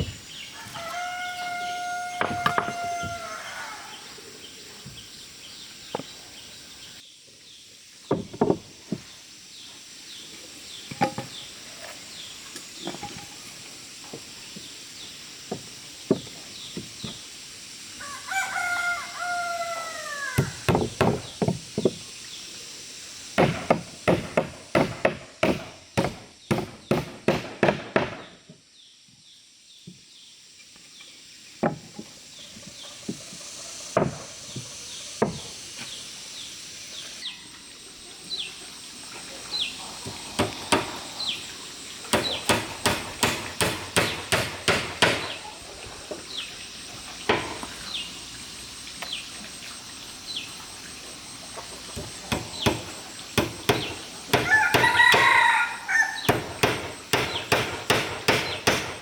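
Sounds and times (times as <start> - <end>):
small birds chirping: 0.0 - 8.2, 32.2 - 43.4, 45.0 - 50.9
rooster crowing: 0.4 - 4.2, 18.0 - 20.7, 54.3 - 56.4
hammer striking wood: 20.4 - 22.0, 23.4 - 28.3, 34.0 - 34.2, 40.4 - 41.0, 42.1 - 45.4, 52.0 - 55.4, 56.3 - 59.0.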